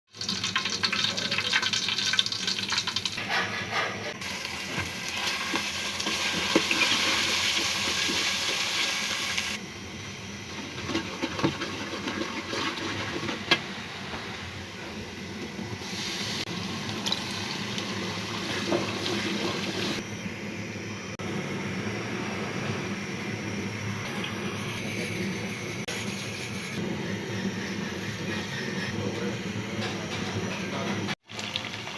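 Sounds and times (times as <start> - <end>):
water running into a sink: 15.8 - 20.0.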